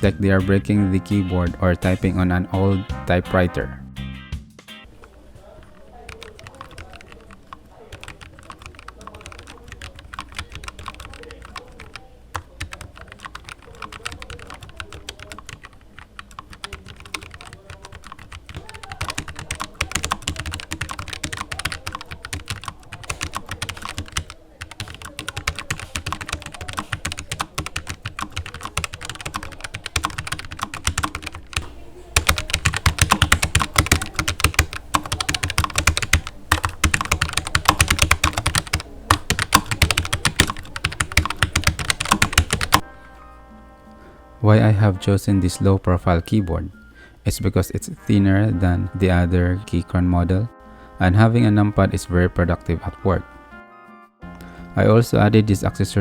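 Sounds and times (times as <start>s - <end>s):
mechanical keyboard typing: 5.6s - 42.8s.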